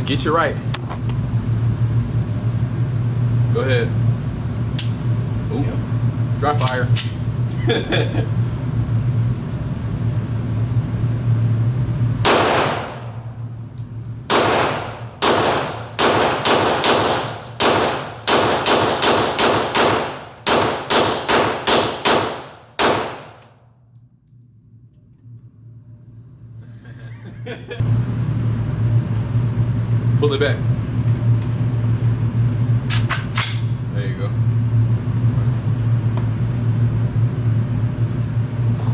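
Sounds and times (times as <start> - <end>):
steady low hum: 0.0 - 38.9
rifle shots echoing: 12.3 - 13.2, 14.3 - 23.4.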